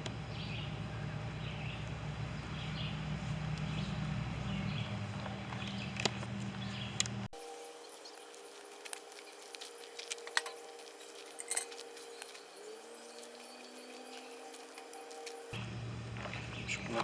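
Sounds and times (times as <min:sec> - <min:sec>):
faint steady hum: 0:00.0 - 0:17.0
light clicks and clinks: 0:08.2 - 0:12.6.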